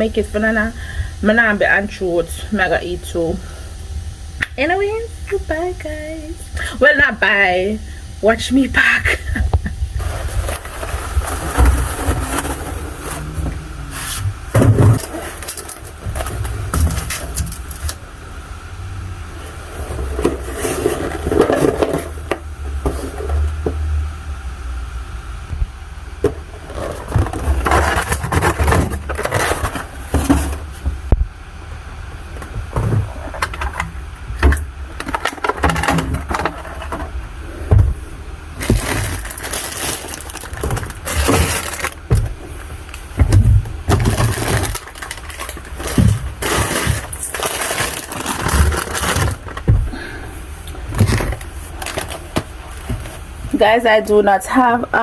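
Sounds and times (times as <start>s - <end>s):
packages clattering and rustling: 9.9s - 18.0s, 19.4s - 23.6s, 26.3s - 31.0s, 32.4s - 38.0s, 38.6s - 53.6s.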